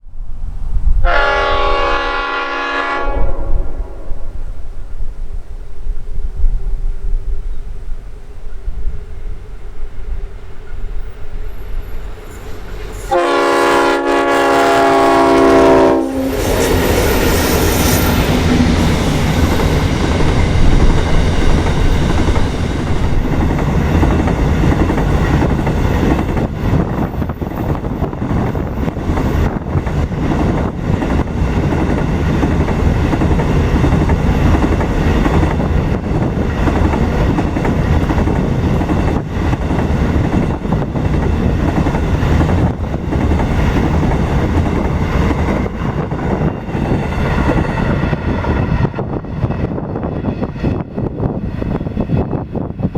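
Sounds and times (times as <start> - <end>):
diesel locomotive engines passing: 0.0 - 52.9
train horn: 1.0 - 4.4, 13.0 - 18.2.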